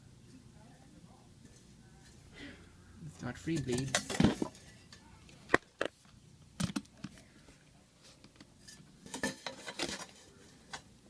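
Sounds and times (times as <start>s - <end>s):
household objects clinking: 3.5s - 5.0s, 8.6s - 10.9s.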